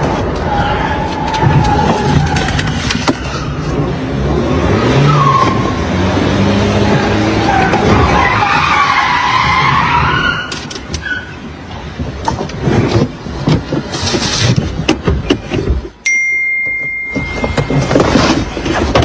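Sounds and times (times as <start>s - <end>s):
car tyres squealing: 0.0s - 11.6s.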